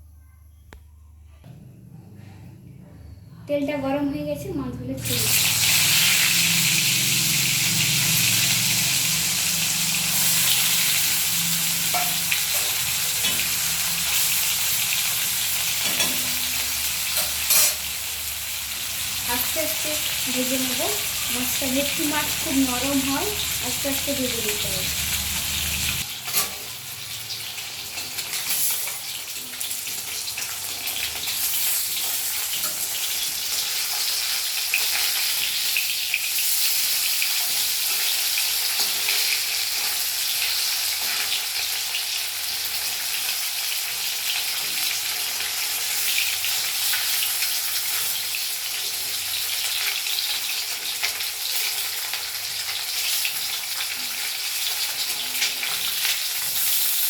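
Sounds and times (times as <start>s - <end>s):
fish sizzling in hot oil: 5.0s - 57.0s.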